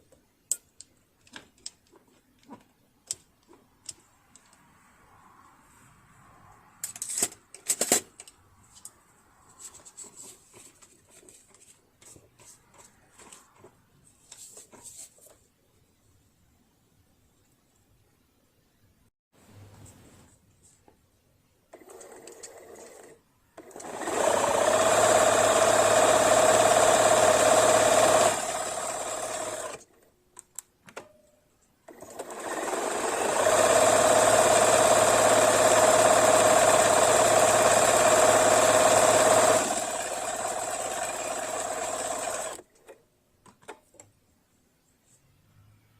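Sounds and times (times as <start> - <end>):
sewing machine running: 21.8 - 29.8, 31.9 - 42.6.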